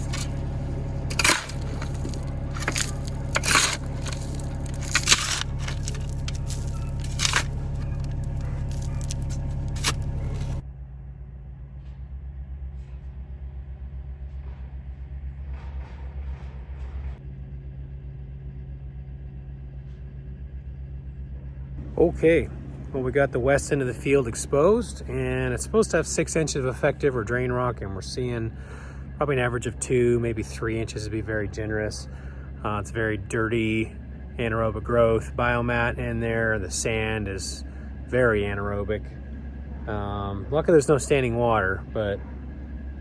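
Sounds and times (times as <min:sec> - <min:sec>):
bucket scraping soil and gravel: 0:00.0 - 0:10.6
excavator diesel engine running: 0:00.0 - 0:10.6, 0:21.8 - 0:43.0.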